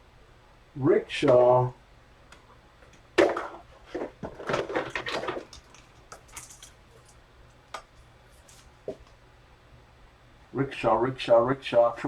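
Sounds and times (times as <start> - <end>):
packaging rustling and scraping: 3.3 - 7.2.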